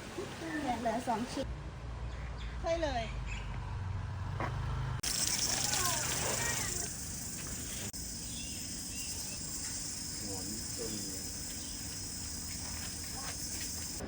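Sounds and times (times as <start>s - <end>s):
high-pitched insect chorus chirring: 5.0s - 14.0s.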